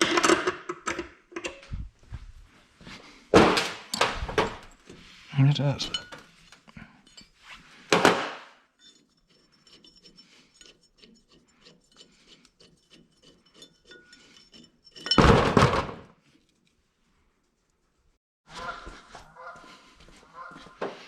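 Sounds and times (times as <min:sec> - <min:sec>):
steel hand tools clanking: 0:03.9 - 0:07.4, 0:08.8 - 0:15.4.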